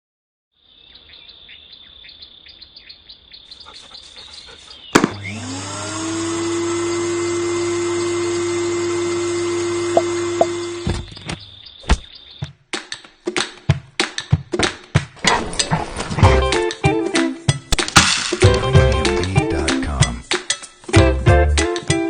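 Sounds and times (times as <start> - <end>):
handheld vacuum motor humming: 5.0 - 11.2.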